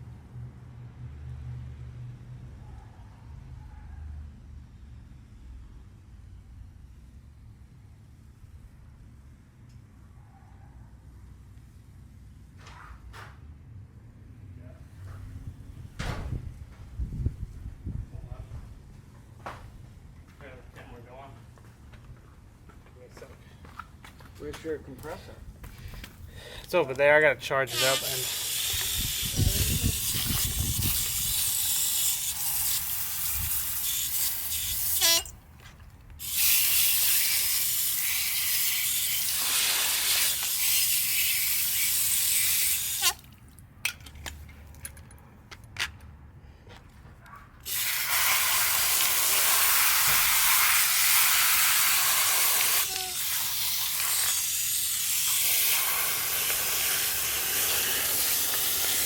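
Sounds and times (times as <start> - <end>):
compressed air hissing: 27.7 - 35.3, 36.2 - 43.2, 47.6 - 59.0.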